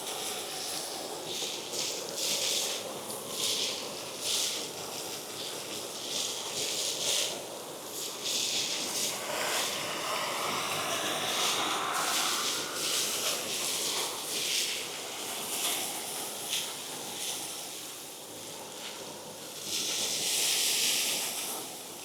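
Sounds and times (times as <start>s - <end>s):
industrial vacuum suction hiss: 6.6s - 17.5s
steady higher tone: 8.8s - 14.0s.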